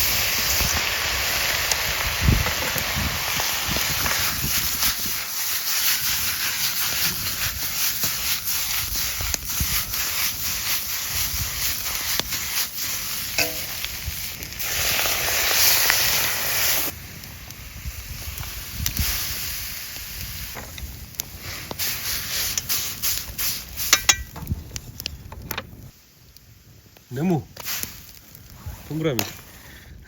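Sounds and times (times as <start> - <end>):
food sizzling: 0.0 - 24.6
wood fire crackling: 0.0 - 30.0.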